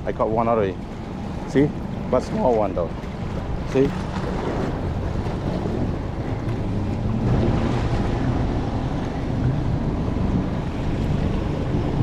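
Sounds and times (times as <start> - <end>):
lake water lapping: 0.0 - 12.0
wind buffeting microphone: 0.0 - 12.0.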